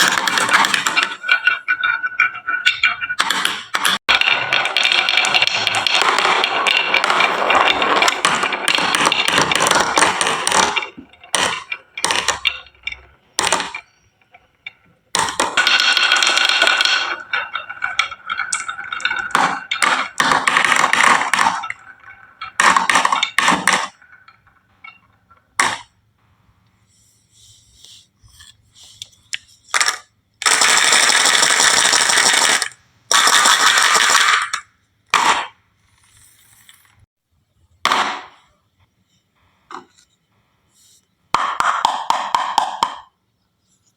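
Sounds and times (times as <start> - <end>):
marbles rolling down wooden track: 0.0 - 26.0, 29.7 - 37.0
marble clicks and knocks: 0.0 - 26.1, 41.3 - 43.2.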